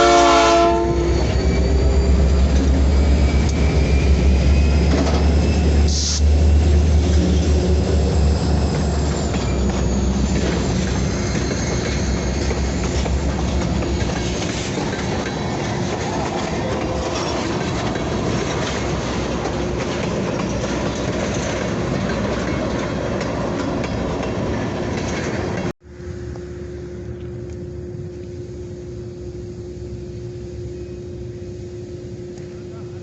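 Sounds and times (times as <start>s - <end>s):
freight train rolling on rails: 0.0s - 33.0s
engine drone with hum: 25.8s - 33.0s.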